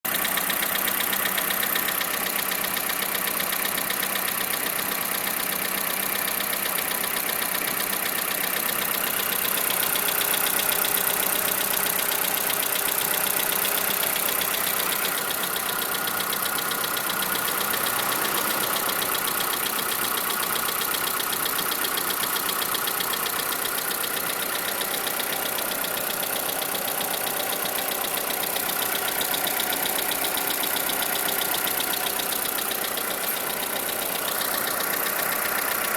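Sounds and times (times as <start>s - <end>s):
car engine knocking: 0.0s - 35.9s.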